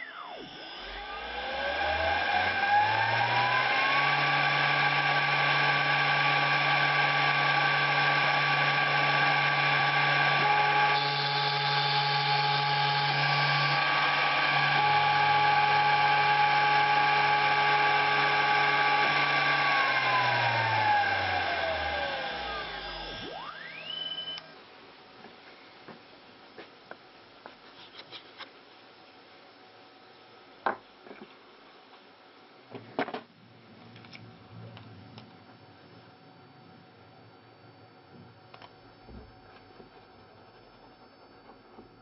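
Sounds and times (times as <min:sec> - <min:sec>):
mill spindle whining: 0:00.0 - 0:24.6.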